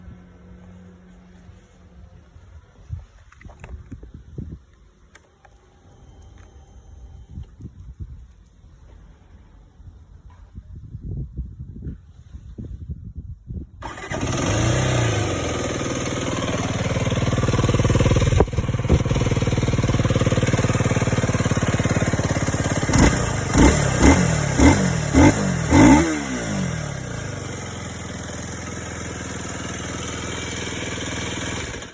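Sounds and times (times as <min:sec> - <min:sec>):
motorcycle engine idling and revving: 0:13.8 - 0:31.9.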